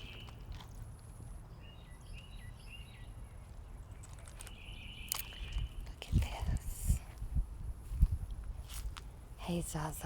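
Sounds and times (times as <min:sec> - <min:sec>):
bird chirping: 0:00.0 - 0:00.5, 0:01.4 - 0:05.9.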